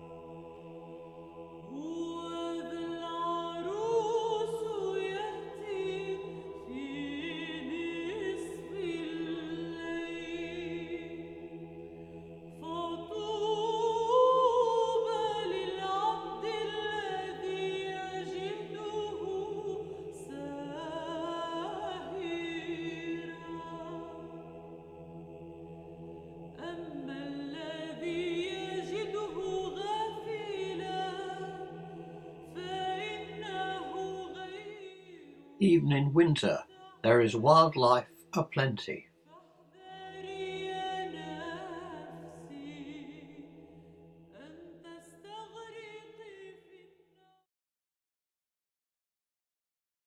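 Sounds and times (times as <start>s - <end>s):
choral voices singing: 0.0s - 38.8s, 39.8s - 46.9s.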